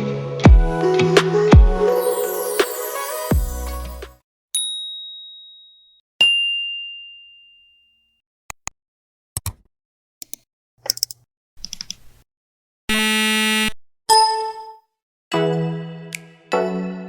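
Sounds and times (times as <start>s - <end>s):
quick editing clicks: 10.2s - 12.0s.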